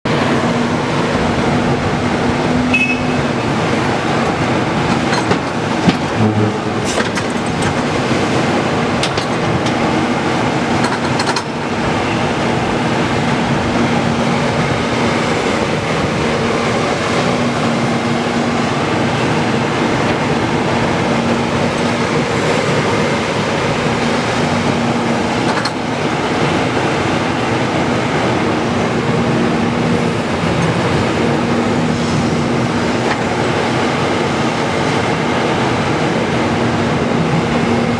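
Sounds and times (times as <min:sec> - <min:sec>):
excavator engine droning: 0:00.1 - 0:37.9
sharp knocks: 0:03.8 - 0:08.1.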